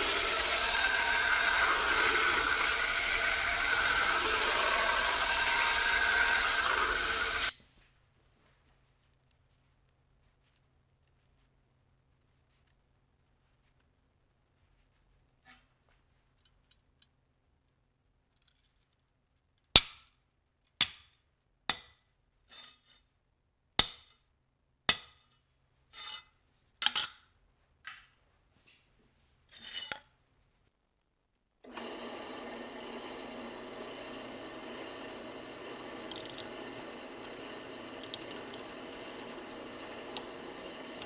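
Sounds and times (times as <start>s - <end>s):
steady machine noise: 0.0s - 7.5s, 31.7s - 41.0s.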